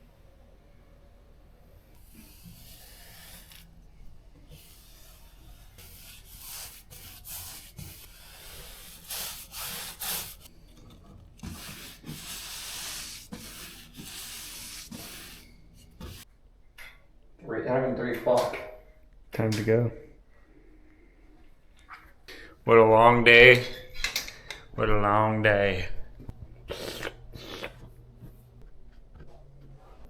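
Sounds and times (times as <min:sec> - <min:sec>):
sandpaper rubbing a surface: 0:02.0 - 0:03.7, 0:04.5 - 0:10.5, 0:11.4 - 0:16.2.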